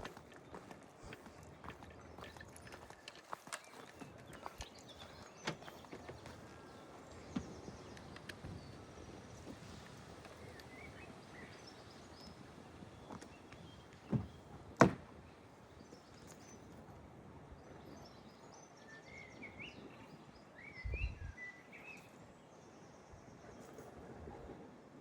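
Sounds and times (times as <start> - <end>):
small birds chirping: 0.2 - 14.5.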